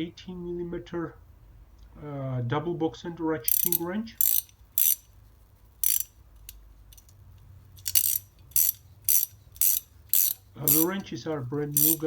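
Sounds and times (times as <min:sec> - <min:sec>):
ratcheting wrench clicking: 0:03.5 - 0:05.2, 0:05.8 - 0:11.1, 0:11.7 - 0:12.0.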